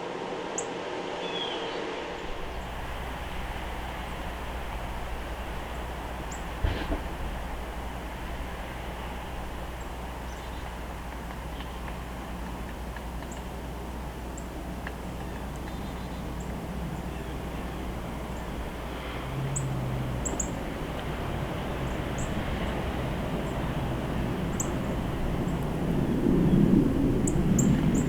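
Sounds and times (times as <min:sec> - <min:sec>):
low background rumble: 0:02.2 - 0:28.0.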